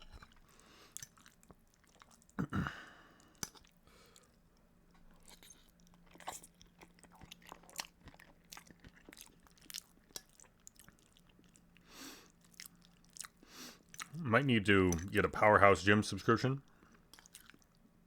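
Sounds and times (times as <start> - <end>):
wet chewing mouth clicks: 5.1 - 11.7, 12.4 - 14.2, 16.7 - 17.8.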